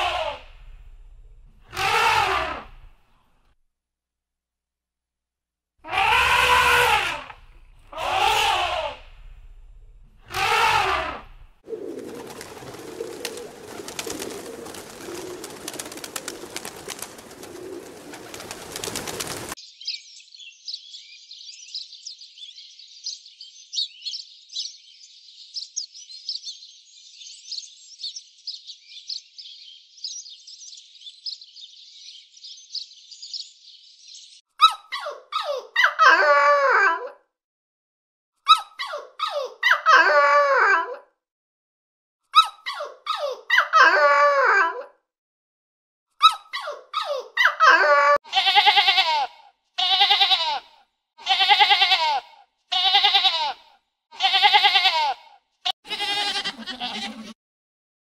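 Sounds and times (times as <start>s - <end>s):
wavering animal cries: 1.7s - 2.8s, 5.8s - 9.1s, 10.3s - 11.3s, 47.4s - 50.6s, 51.2s - 53.6s, 54.2s - 55.2s, 55.8s - 57.4s
flock of birds twittering: 11.8s - 20.0s.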